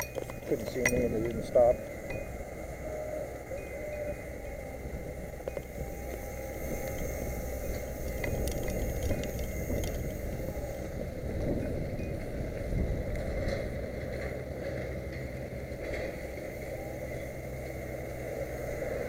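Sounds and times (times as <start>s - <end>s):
thin high whine: 0.0s - 13.8s
low rumble of street traffic: 0.0s - 19.0s.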